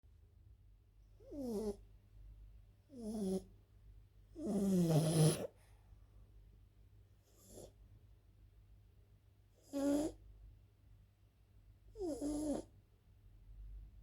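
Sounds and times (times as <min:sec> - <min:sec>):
dog snoring: 0:01.2 - 0:01.8, 0:02.9 - 0:03.5, 0:04.3 - 0:05.6, 0:07.2 - 0:07.8, 0:09.6 - 0:10.2, 0:11.9 - 0:12.8.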